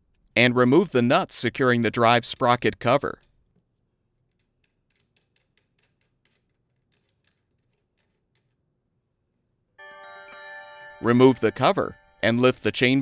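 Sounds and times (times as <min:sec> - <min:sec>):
music with bell-like tones: 0:09.8 - 0:13.0.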